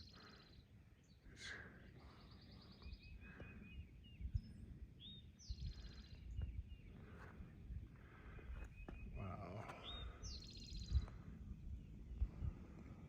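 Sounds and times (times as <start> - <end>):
songbirds chirping and trilling: 0.0 - 13.0
wind buffeting microphone: 2.8 - 13.0.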